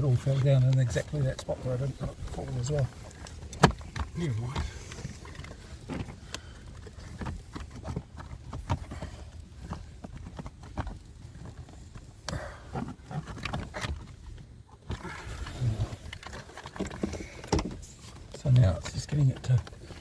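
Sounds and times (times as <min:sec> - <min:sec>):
plastic trim knocking and scraping: 0:14.8 - 0:20.0.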